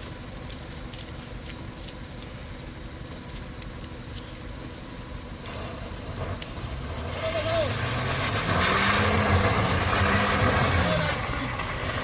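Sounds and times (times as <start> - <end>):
heavy vehicle engines rumbling: 3.9 - 12.0.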